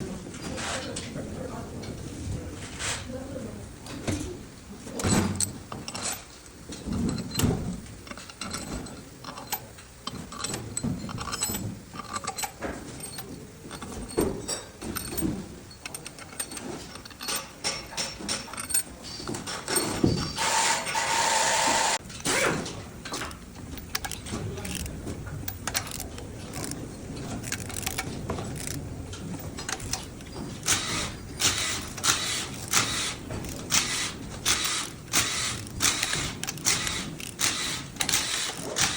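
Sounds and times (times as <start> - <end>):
metal tools clinking: 5.0 - 20.4.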